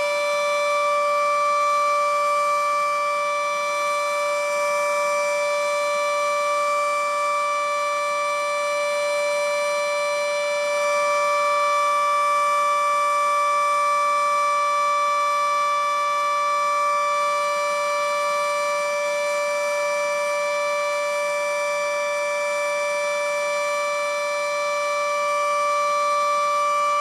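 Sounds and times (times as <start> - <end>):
warning siren steady tone: 0.0 - 27.0.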